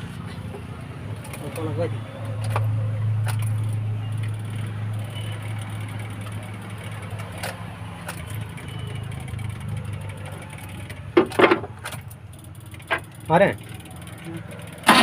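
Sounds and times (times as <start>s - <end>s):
engine cranking on starter: 12.7s - 15.0s.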